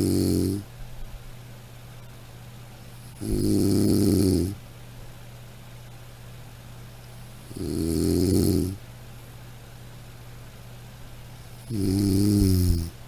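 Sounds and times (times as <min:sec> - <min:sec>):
person snoring: 0:00.0 - 0:00.6, 0:03.1 - 0:04.6, 0:07.5 - 0:08.8, 0:11.6 - 0:13.0.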